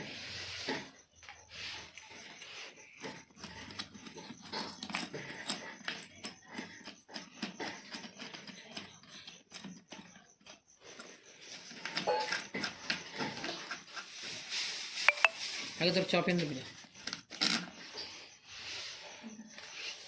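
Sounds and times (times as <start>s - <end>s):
fan parts clicking and rattling: 0.7s - 14.4s.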